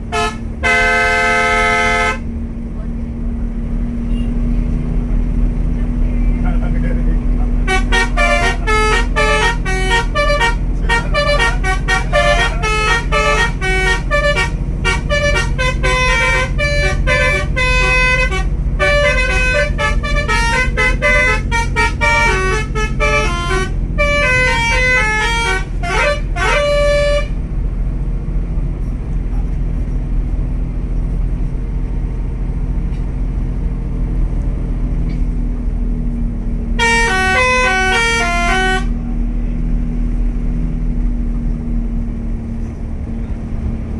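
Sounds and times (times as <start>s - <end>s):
bus horn playing melodies: 0.0s - 2.3s, 7.6s - 27.6s, 36.8s - 39.4s
bus engine humming: 0.0s - 43.9s.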